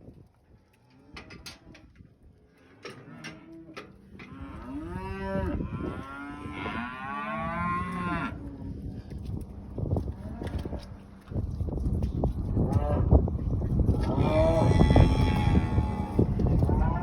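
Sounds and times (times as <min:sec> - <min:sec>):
cattle mooing: 0:02.8 - 0:08.5, 0:14.0 - 0:17.0.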